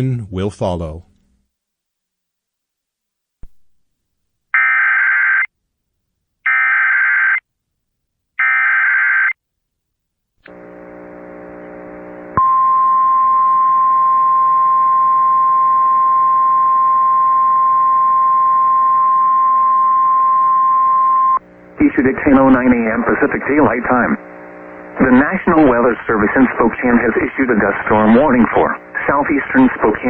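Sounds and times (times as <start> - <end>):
steady single-pitch attention tone: 12.4 - 21.4.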